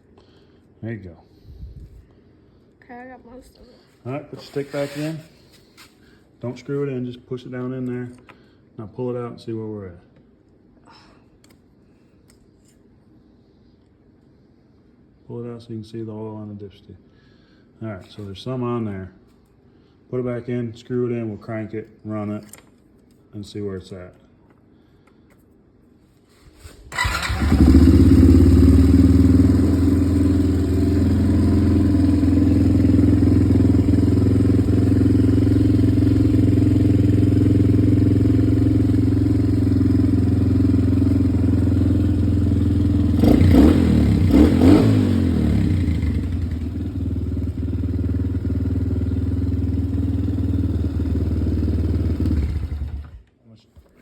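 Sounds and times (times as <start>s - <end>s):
atv engine idling: 27.0s - 53.2s.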